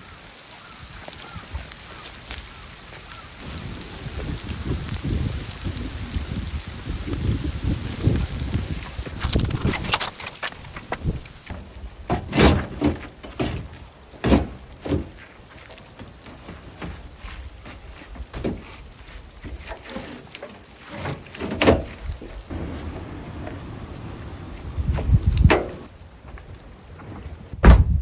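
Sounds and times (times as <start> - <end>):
low rustling: 1.6 - 12.0, 16.6 - 27.6
knocks and thuds: 27.6 - 28.0.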